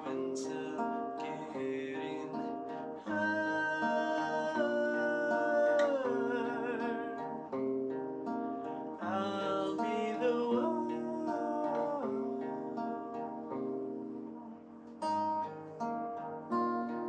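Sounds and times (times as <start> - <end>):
wordless singing: 0.0 - 7.6, 8.6 - 14.2
plucked acoustic guitar: 0.0 - 17.0.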